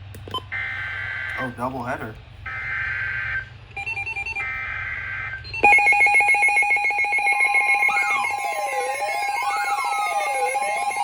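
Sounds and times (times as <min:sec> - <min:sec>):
shrill digital header tones: 0:02.5 - 0:11.0
loud electronic alert tone: 0:03.8 - 0:11.0.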